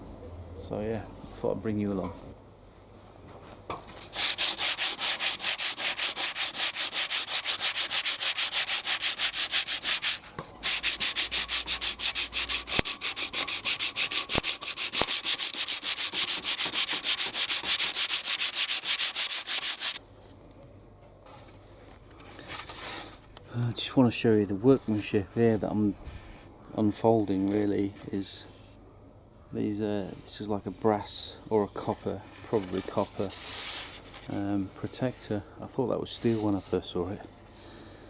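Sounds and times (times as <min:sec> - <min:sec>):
sandpaper rubbing on wood: 0:04.1 - 0:20.0.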